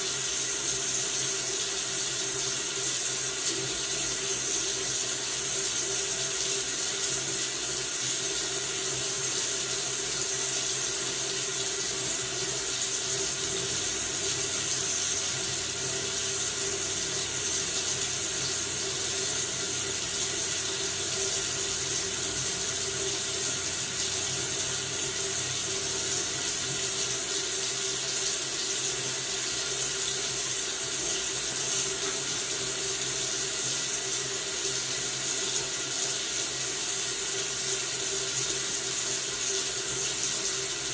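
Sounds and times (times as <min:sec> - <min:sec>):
faucet running into a sink: 0:00.0 - 0:40.9.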